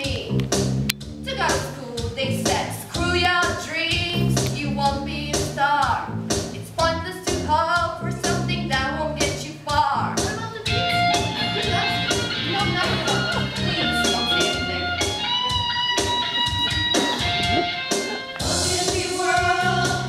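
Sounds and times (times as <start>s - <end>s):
steady bass accompaniment: 0.0s - 20.0s
guitar with held notes: 10.6s - 18.4s
person singing: 16.2s - 20.0s.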